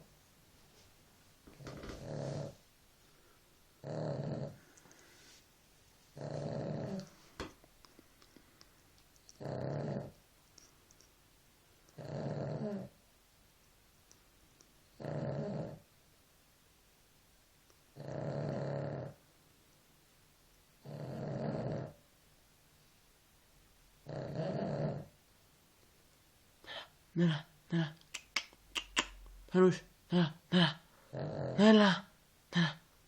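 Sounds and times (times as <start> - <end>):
dog snoring: 1.6 - 2.6, 3.8 - 4.7, 6.2 - 7.2, 9.4 - 10.2, 11.9 - 13.0, 15.0 - 15.8, 18.0 - 19.2, 20.8 - 22.0, 24.0 - 25.2, 31.0 - 31.9.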